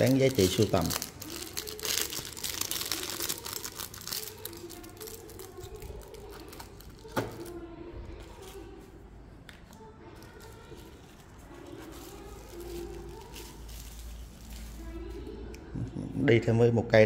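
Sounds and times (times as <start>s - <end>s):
packaging crinkling and rustling: 0.0s - 7.6s, 9.6s - 15.3s.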